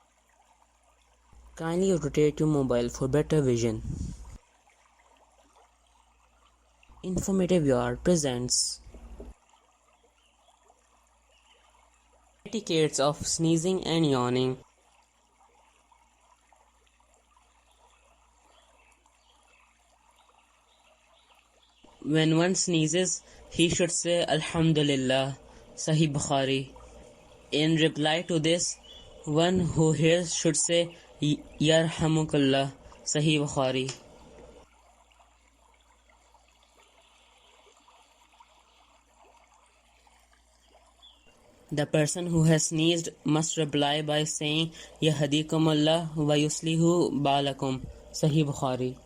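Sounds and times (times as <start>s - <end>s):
faint trickle of running water: 0.0s - 49.0s
low hum: 1.3s - 4.4s.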